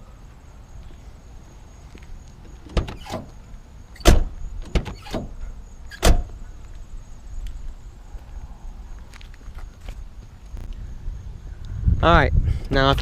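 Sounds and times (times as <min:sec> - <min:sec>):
car door knocks and clunks: 0:02.5 - 0:03.3, 0:04.0 - 0:05.4
car door slams: 0:04.0 - 0:06.4.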